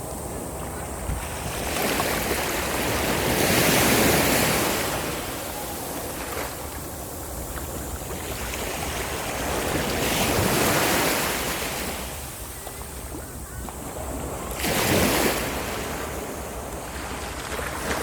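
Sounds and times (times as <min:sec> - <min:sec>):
sea waves breaking on shore: 0:00.0 - 0:18.0.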